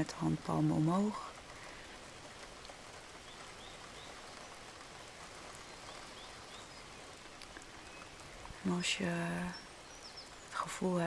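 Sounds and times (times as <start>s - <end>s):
steady rain falling: 0.0s - 11.0s
faint bird chirps: 5.5s - 10.7s.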